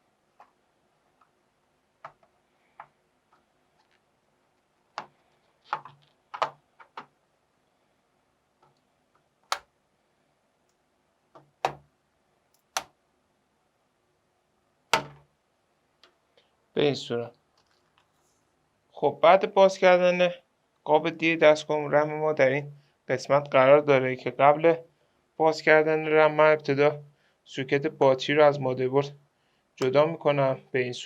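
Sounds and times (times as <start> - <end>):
plastic clips clicking and snapping: 9.4 - 9.7, 12.6 - 13.0.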